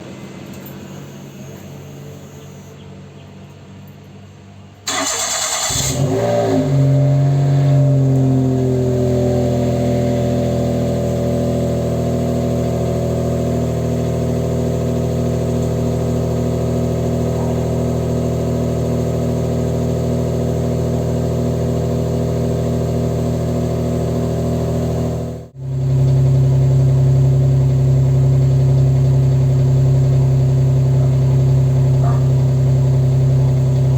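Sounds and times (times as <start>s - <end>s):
car engine idling: 0.0s - 33.9s
engine cranking: 4.9s - 6.2s.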